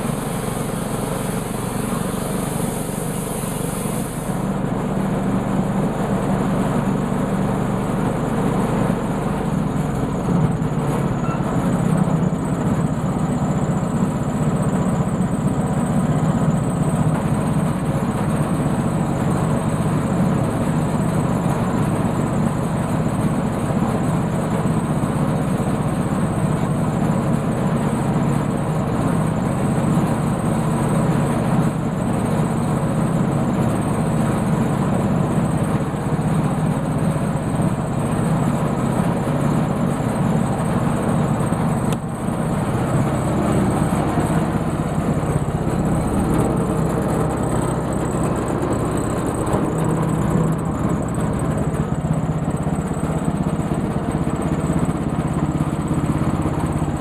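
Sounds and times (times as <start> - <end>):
sawmill engine running: 0.0 - 57.0.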